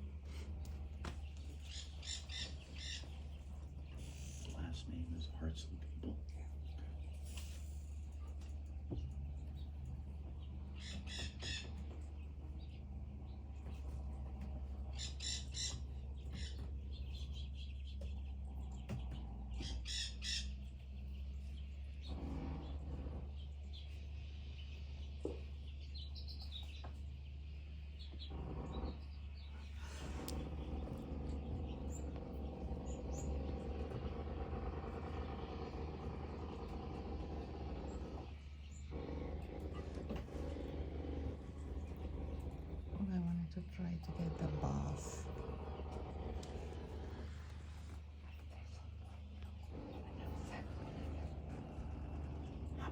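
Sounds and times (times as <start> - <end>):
steady low hum: 0.0 - 52.9
parrots squawking: 1.6 - 4.8, 14.9 - 17.5, 19.5 - 20.7.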